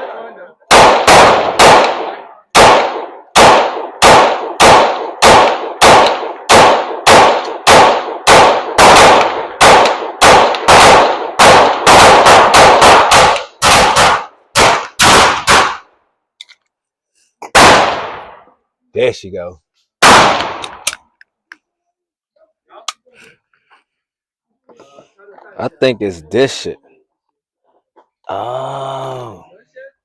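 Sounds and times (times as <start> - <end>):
semi-automatic gunfire: 0.7 - 15.9, 17.5 - 18.4, 20.0 - 20.9.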